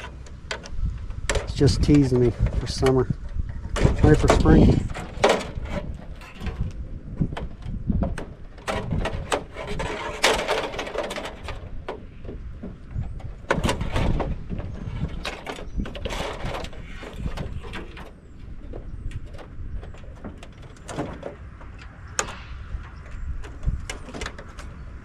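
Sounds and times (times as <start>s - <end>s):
metal knocks and clatter: 0.0s - 25.0s
metal scraping and squealing: 8.6s - 11.6s.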